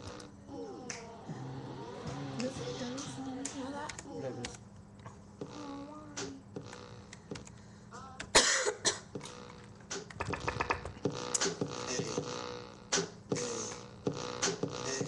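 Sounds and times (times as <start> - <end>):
rap vocals: 0.4 - 4.6, 5.4 - 6.6, 7.9 - 8.4, 11.4 - 12.4, 14.7 - 15.0
drum machine beat: 5.4 - 7.5, 9.1 - 15.0.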